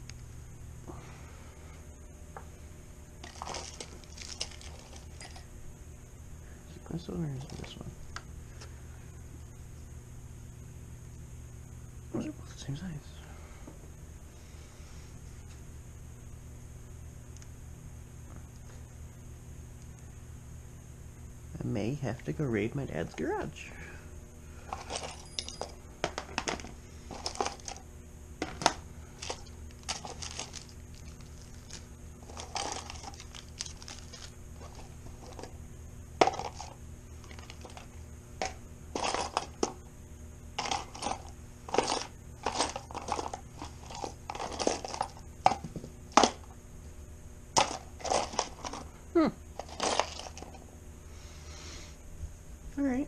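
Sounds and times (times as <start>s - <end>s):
faint steady hum: 0.0s - 53.0s
hand tools clicking and clattering: 3.2s - 5.4s, 24.7s - 27.8s, 28.4s - 35.5s, 36.2s - 36.7s, 37.3s - 39.8s, 40.6s - 46.4s, 47.6s - 48.9s, 49.6s - 50.6s.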